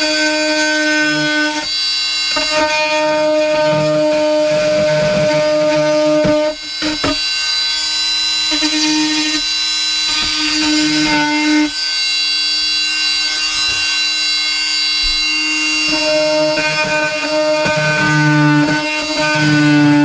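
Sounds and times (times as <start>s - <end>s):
power tool whining: 0.0s - 20.0s.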